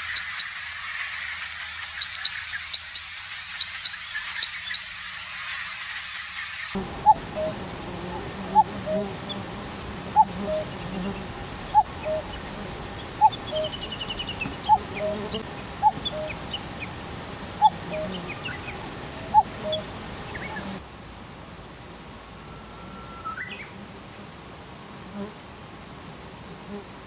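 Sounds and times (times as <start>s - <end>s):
distant bird chirps: 1.2s - 5.9s, 6.6s - 20.8s, 22.2s - 23.8s
bird two-note call: 7.0s - 9.1s, 11.8s - 12.4s, 13.2s - 16.4s.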